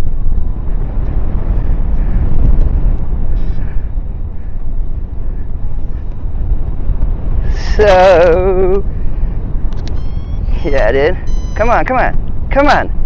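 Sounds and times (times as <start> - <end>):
wind buffeting microphone: 0.0 - 13.0
faint short beeps: 9.8 - 10.6, 11.2 - 11.8.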